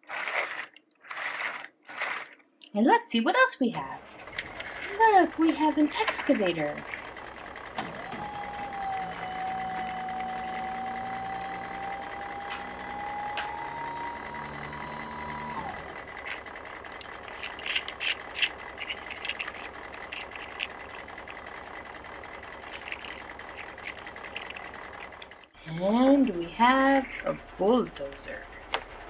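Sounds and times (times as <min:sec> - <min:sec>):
plastic toy pieces clicking: 0:00.0 - 0:02.7, 0:16.2 - 0:25.5
toy motor whining: 0:07.7 - 0:25.5.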